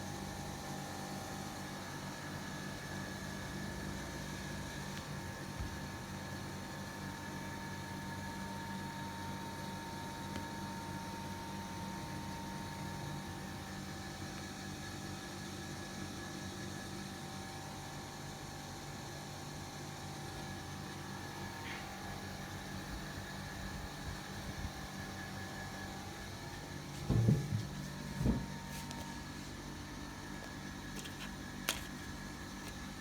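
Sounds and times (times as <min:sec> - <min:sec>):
ceiling fan motor hum: 0:00.0 - 0:33.0.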